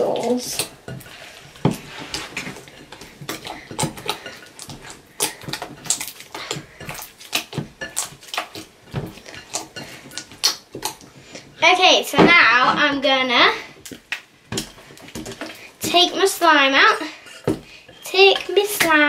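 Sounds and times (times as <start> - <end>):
slime squelching and popping: 0.1 - 11.1.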